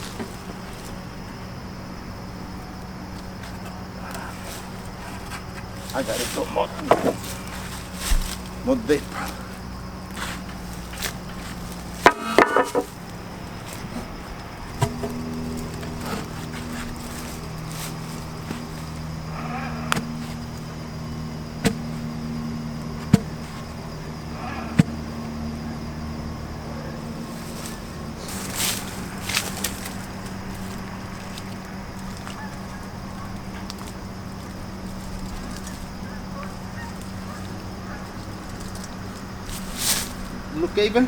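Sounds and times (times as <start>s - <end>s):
steady low hum: 0.0s - 41.0s
digging tool striking soil: 14.8s - 17.3s, 19.9s - 20.5s, 21.6s - 22.2s, 23.0s - 23.6s, 24.8s - 25.1s.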